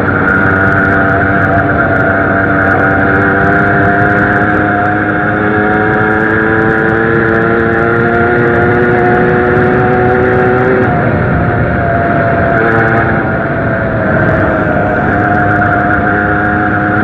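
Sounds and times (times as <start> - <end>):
moped engine running: 0.0 - 17.0.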